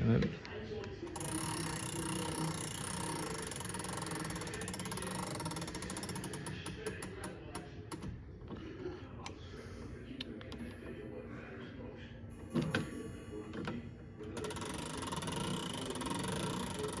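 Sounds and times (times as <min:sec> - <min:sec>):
clock winding ratchet clicks: 0:01.2 - 0:07.3, 0:14.4 - 0:17.0.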